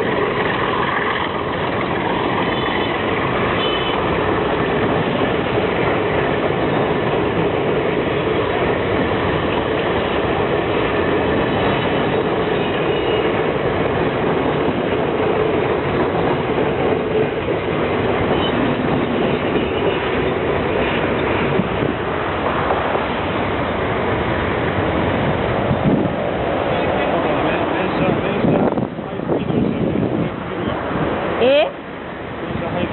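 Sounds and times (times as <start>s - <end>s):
train rumbling past: 0.0s - 32.9s.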